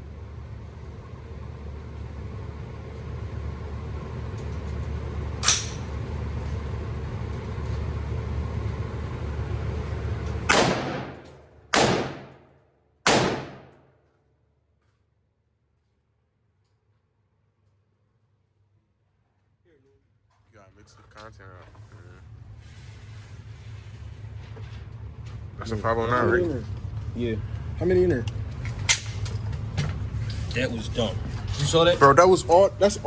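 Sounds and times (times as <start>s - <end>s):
sharp click: 5.4s - 5.9s
loud gunshots: 10.5s - 12.5s, 13.1s - 13.8s.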